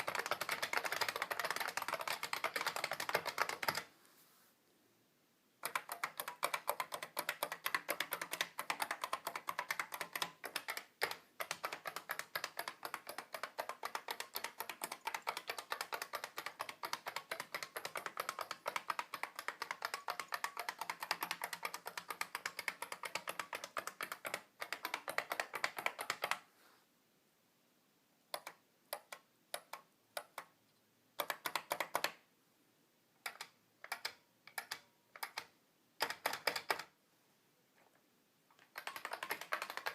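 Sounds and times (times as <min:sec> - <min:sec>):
keyboard key clicks: 0:31.2 - 0:32.2, 0:38.6 - 0:39.9.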